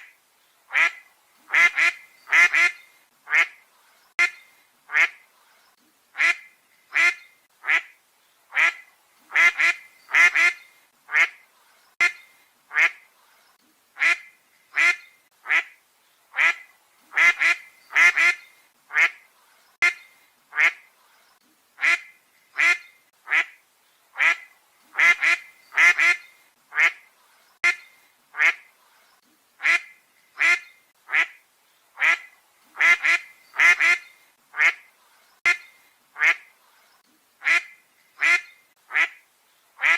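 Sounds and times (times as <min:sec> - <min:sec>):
duck quacking: 0:00.7 - 0:03.6, 0:04.2 - 0:05.2, 0:06.2 - 0:07.9, 0:08.5 - 0:11.4, 0:12.0 - 0:13.0, 0:14.0 - 0:15.8, 0:16.4 - 0:19.2, 0:19.8 - 0:20.8, 0:21.8 - 0:23.6, 0:24.2 - 0:27.0, 0:27.6 - 0:28.6, 0:29.6 - 0:31.4, 0:32.0 - 0:34.8, 0:35.4 - 0:36.5, 0:37.4 - 0:39.2.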